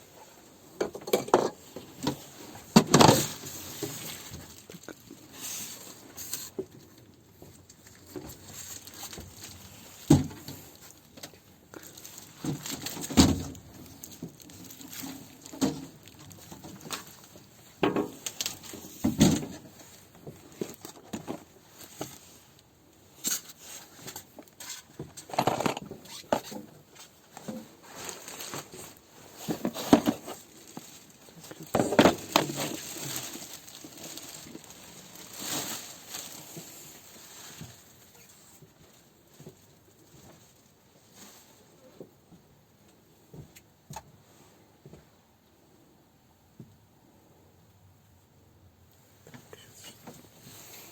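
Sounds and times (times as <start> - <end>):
handling knocks and clinks: 24.6 - 26.5.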